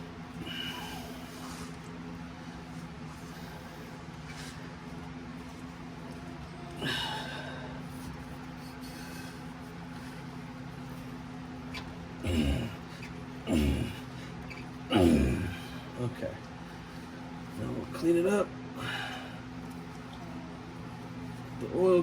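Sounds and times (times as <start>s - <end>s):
steady low hum: 0.0s - 22.0s
man grunting: 12.2s - 12.9s, 13.5s - 14.1s, 14.9s - 16.0s.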